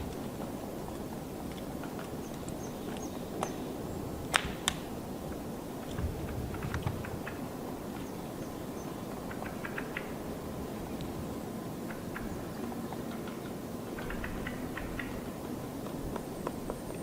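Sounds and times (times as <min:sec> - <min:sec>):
bark cracking: 0:04.3 - 0:04.9.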